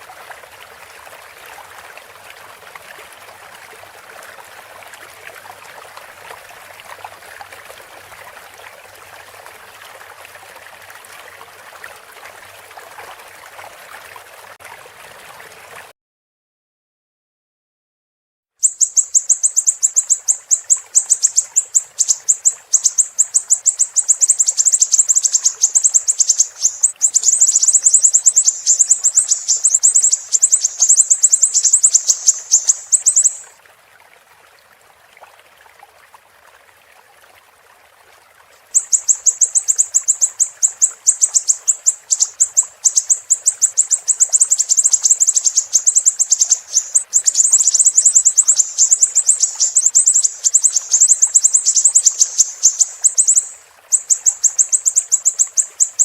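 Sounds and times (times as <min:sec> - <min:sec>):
bird chattering trill: 0:18.6 - 0:33.4, 0:38.8 - 0:56.0
faint steady hiss: 0:18.6 - 0:56.0.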